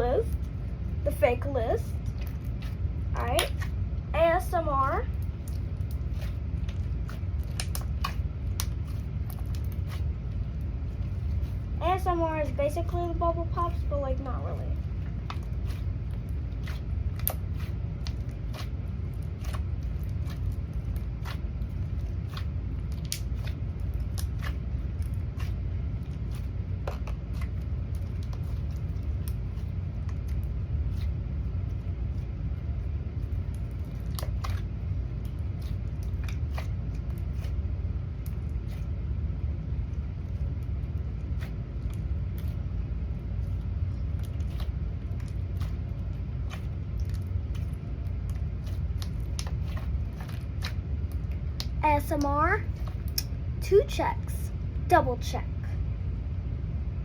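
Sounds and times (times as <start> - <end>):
steady low rumble: 0.0 - 57.0
slime squishing and popping: 5.1 - 10.3, 15.0 - 31.2, 33.2 - 38.9, 43.4 - 53.3.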